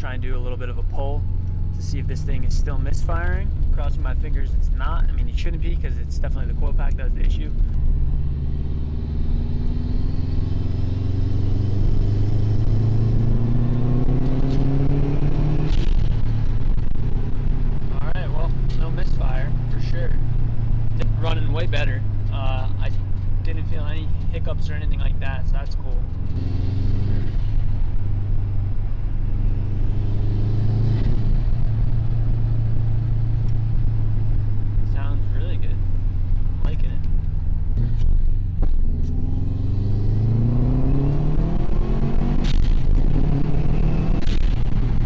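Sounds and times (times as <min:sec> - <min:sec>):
car engine accelerating: 0:00.0 - 0:45.0.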